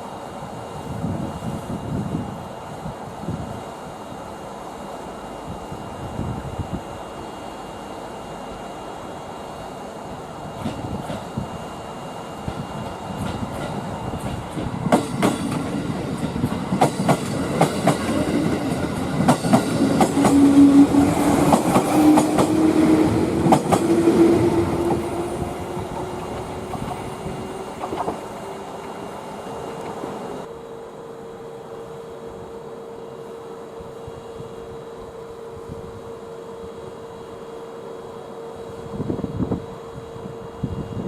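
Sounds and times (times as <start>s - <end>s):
train wheels clicking over rail joints: 10.6s - 11.4s, 12.4s - 30.3s.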